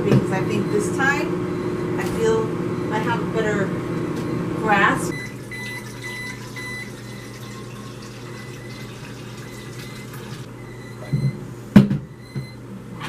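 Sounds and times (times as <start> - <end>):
water filling plastic bottle: 5.2 - 10.5.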